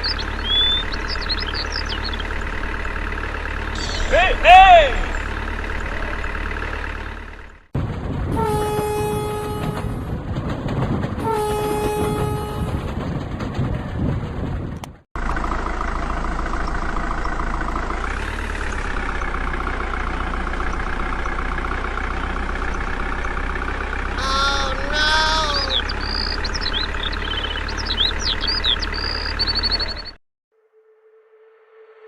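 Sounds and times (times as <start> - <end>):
high chirping whistles: 0.0 - 2.3, 25.5 - 30.2
vehicle engine running: 0.0 - 30.2
bending horn-like tones: 8.3 - 10.1, 11.2 - 13.0.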